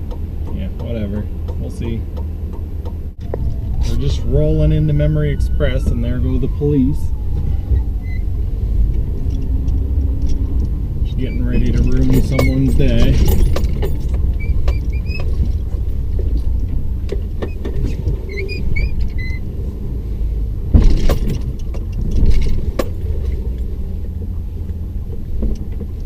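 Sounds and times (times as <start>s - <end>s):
truck engine and road rumble: 0.0s - 26.0s
short high squeaks: 11.1s - 13.5s, 14.3s - 15.6s, 17.4s - 19.5s.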